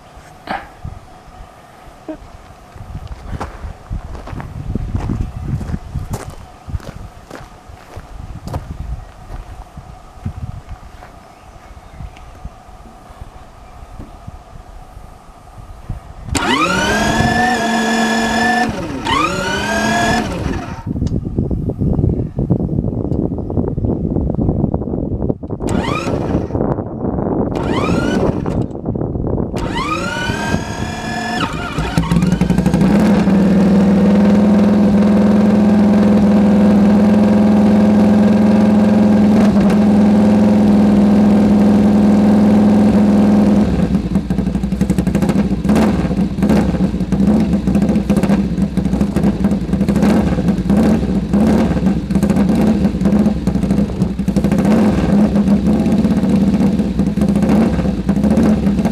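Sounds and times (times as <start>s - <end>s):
motorcycle engine revving: 16.3s - 21.0s, 25.6s - 26.7s, 27.5s - 28.7s, 29.6s - 58.9s.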